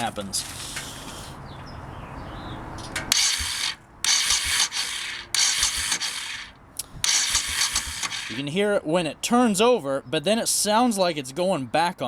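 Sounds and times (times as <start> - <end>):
motorcycle starter cranking engine: 2.7 - 8.5.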